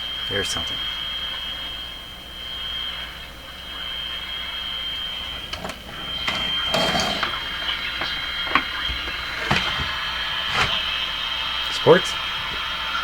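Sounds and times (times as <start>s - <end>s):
high-pitched radio whistle: 0.0s - 5.4s.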